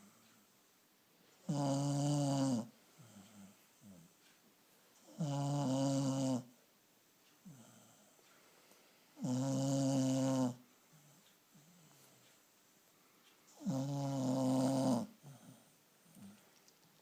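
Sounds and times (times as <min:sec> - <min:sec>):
dog snoring: 0:01.4 - 0:04.1, 0:05.0 - 0:06.6, 0:09.2 - 0:12.1, 0:13.5 - 0:15.8.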